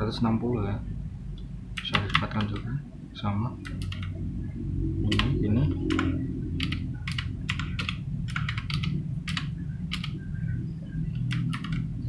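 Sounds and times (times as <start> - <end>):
steady low hum: 0.0 - 12.0
mechanical keyboard clicks: 1.8 - 2.7, 3.6 - 4.2, 5.9 - 10.2, 11.1 - 11.9.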